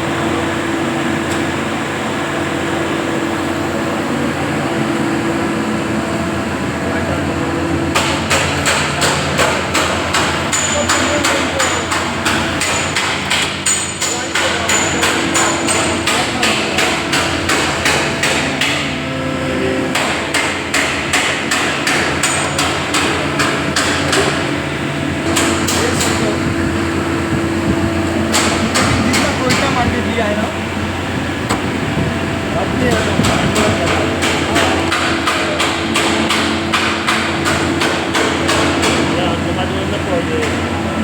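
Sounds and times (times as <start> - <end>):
steady hum: 0.0 - 41.0
hammer blows on sheet metal: 7.9 - 19.3, 19.9 - 30.4, 31.5 - 39.7.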